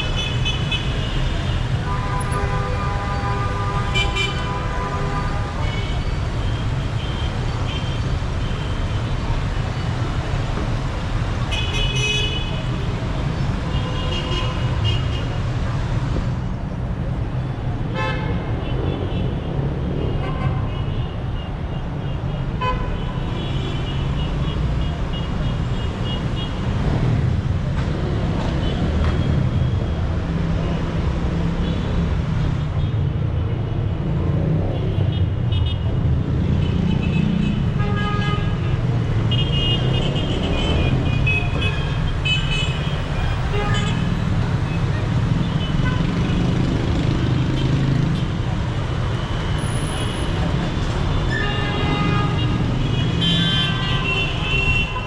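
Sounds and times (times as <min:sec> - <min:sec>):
traffic rumble: 0:00.0 - 0:55.0
vehicle horns honking: 0:51.3 - 0:55.0.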